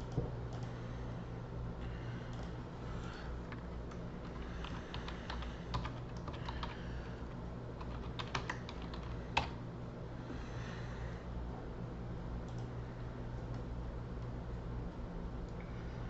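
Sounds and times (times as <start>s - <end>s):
steady low hum: 0.0s - 16.0s
keyboard typing clicks: 3.9s - 6.8s, 7.8s - 9.6s.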